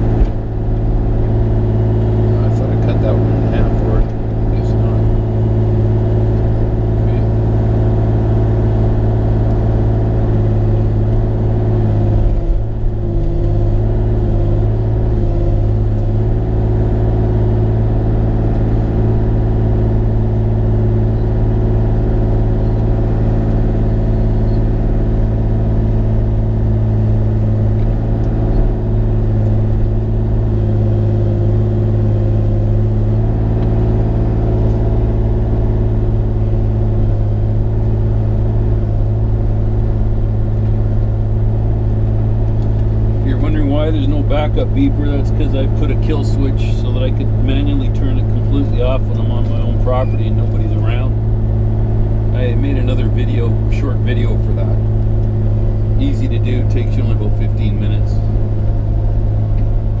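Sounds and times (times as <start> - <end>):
excavator diesel engine running: 0.0 - 60.0.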